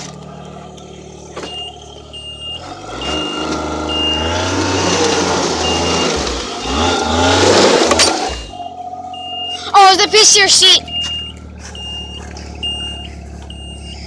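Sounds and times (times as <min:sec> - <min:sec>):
snowmobile engine revving: 0:00.0 - 0:14.0
short electronic beeps: 0:01.4 - 0:07.0, 0:08.5 - 0:14.0.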